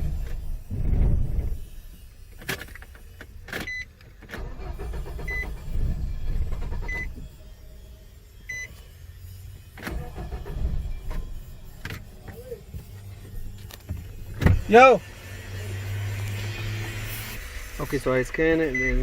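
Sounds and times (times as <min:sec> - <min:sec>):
starter motor cranking engine: 0:00.0 - 0:07.9, 0:09.8 - 0:19.0
short electronic beeps: 0:18.6 - 0:19.0.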